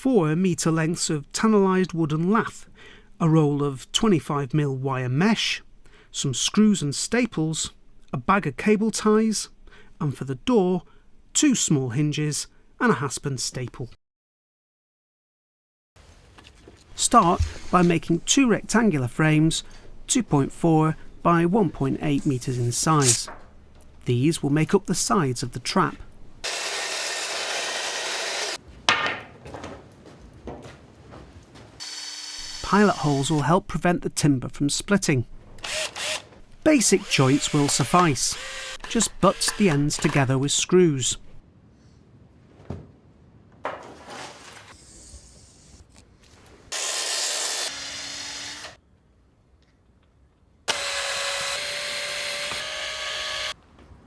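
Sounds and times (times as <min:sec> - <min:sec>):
power drill whirring: 0:26.4 - 0:28.6, 0:31.8 - 0:33.4, 0:35.6 - 0:40.2, 0:46.7 - 0:48.8, 0:50.7 - 0:53.6
power saw cutting wood: 0:26.4 - 0:28.6, 0:31.8 - 0:33.5, 0:36.8 - 0:40.2, 0:46.7 - 0:48.8, 0:50.7 - 0:53.6.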